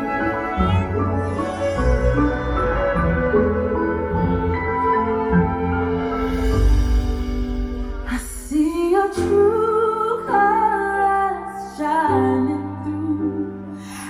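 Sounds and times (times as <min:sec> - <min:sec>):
pop song: 0:07.9 - 0:14.0.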